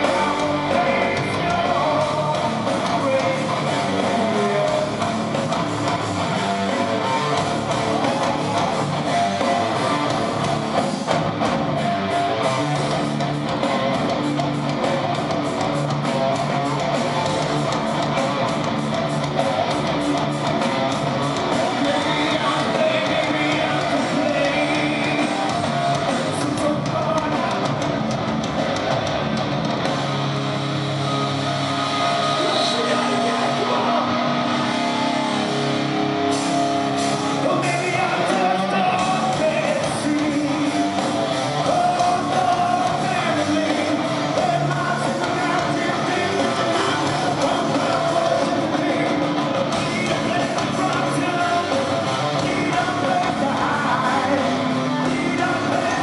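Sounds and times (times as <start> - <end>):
person singing: 0.0 - 10.3, 21.5 - 27.8, 37.1 - 56.0
metal band playing live: 0.0 - 56.0.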